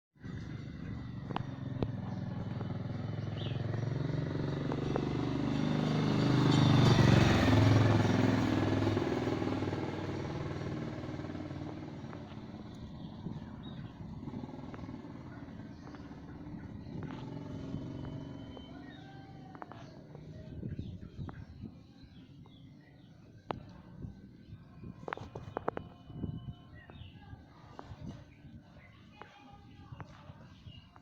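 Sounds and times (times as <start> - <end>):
vehicle engine passing by: 0.2 - 21.7.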